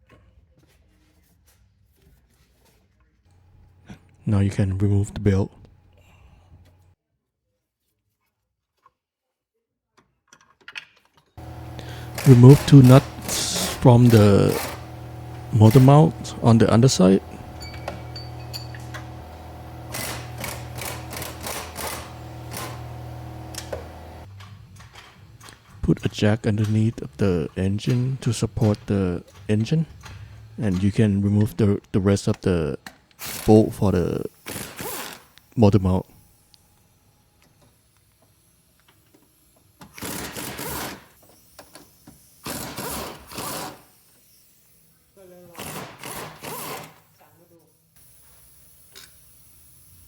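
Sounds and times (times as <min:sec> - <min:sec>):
steady low hum: 0:11.4 - 0:24.3
tool handling ticks: 0:11.4 - 0:24.3
cordless power tool running: 0:11.4 - 0:24.4, 0:33.2 - 0:45.0, 0:45.6 - 0:47.0
ratchet wrench clicking: 0:17.6 - 0:19.1, 0:19.9 - 0:22.8.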